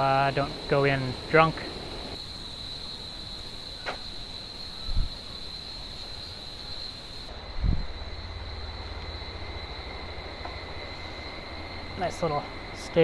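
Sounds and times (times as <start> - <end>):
low outdoor rumble: 7.3 - 13.0.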